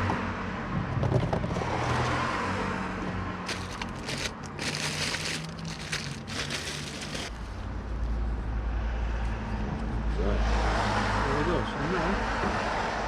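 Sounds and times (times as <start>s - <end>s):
metallic scraping and crunching: 3.5s - 7.4s.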